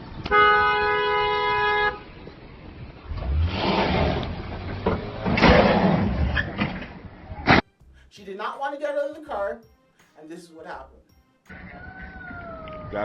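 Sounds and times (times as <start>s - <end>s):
rough vehicle noise: 0.0s - 7.6s
car horn blast: 0.3s - 2.1s.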